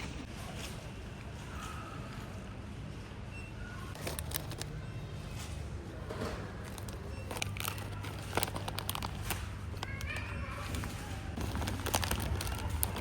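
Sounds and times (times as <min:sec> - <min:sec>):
rustling: 0:10.6 - 0:13.0.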